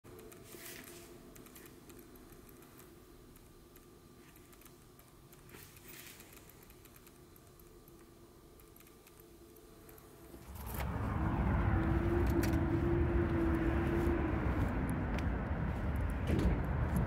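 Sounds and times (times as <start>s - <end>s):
steady engine tone: 9.4s - 17.0s
motor vehicle passing: 10.4s - 17.0s.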